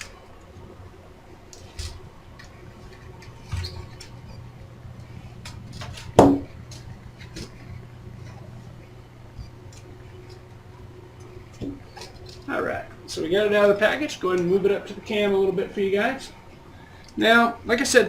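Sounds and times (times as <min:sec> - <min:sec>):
faint low hum: 0:00.0 - 0:18.0
loud knock: 0:06.2 - 0:06.5.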